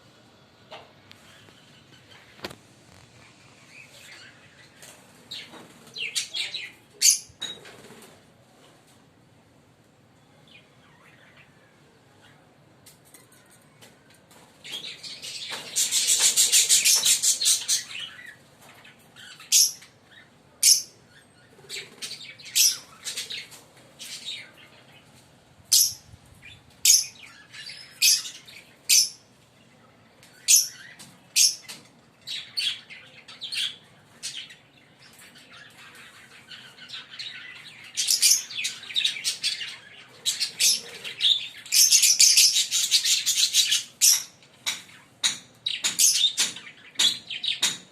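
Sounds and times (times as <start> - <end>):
birds chirping and chattering: 0.9 - 8.3, 10.2 - 47.9.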